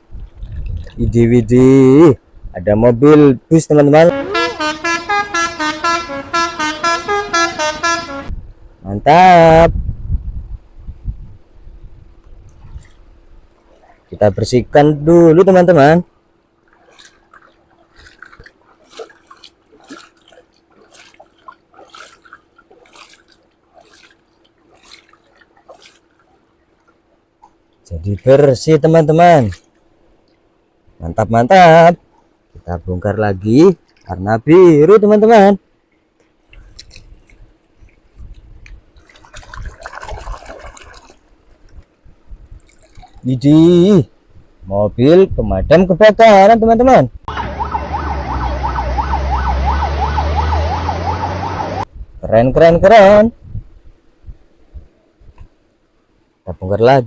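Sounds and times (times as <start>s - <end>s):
water dripping and splashing: 0.1s - 1.2s, 16.5s - 28.3s, 33.8s - 34.1s, 36.2s - 43.3s.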